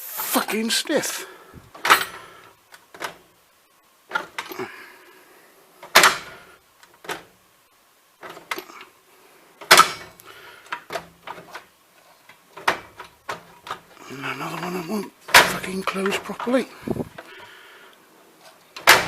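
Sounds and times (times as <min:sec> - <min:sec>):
steel drawers opening and shutting: 0:01.7 - 0:02.2, 0:02.9 - 0:03.2, 0:04.1 - 0:04.6, 0:05.8 - 0:07.4, 0:08.2 - 0:08.8, 0:09.6 - 0:10.2, 0:12.5 - 0:13.9, 0:14.5 - 0:17.2, 0:18.5 - 0:19.0.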